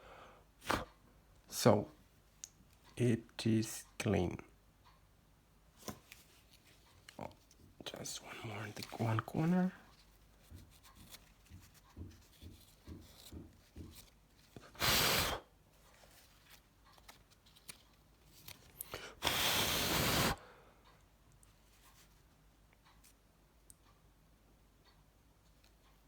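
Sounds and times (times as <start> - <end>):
soft taps and rubbing: 8.7 - 14.6
short hisses of blown air: 14.7 - 15.5, 19.2 - 20.5.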